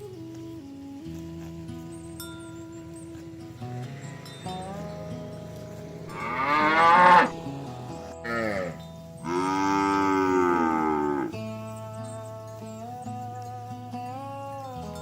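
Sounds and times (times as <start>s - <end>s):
background music: 0.0s - 15.0s
cattle mooing: 3.7s - 11.4s.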